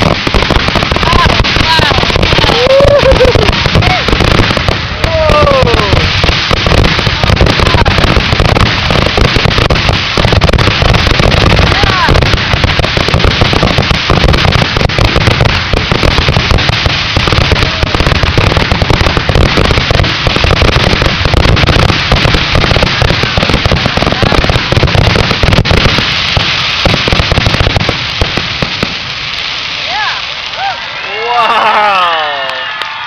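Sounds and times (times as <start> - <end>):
fireworks crackling: 0.0 - 33.0.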